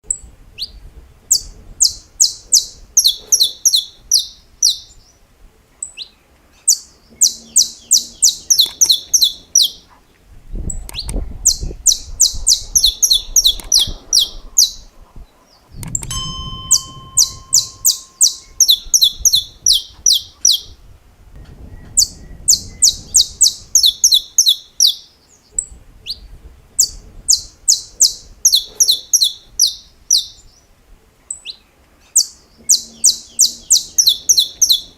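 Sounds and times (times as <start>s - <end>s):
finch singing sharp snapping notes: 6.7s - 9.8s, 10.8s - 14.8s.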